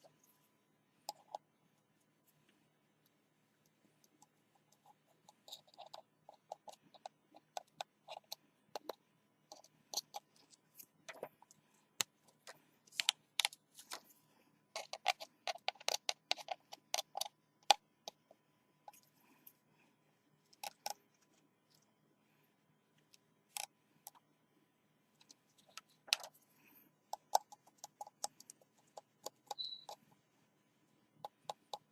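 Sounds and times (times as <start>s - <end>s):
tools clicking on smartphone: 27.2s - 30.0s.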